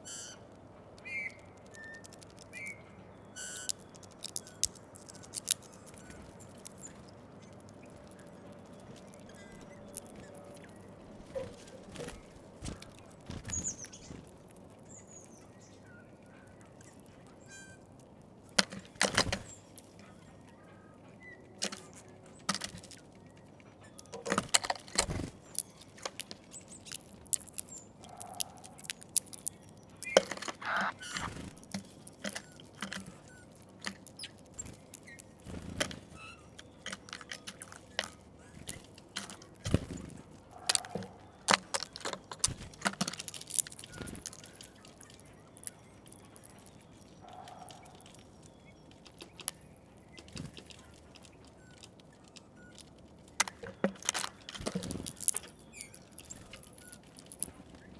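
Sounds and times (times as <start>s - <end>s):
seeds cracking and beak taps: 1.0s - 15.8s, 16.4s - 20.3s, 21.5s - 57.9s
faint bird calls: 27.5s - 31.7s, 43.8s - 53.0s.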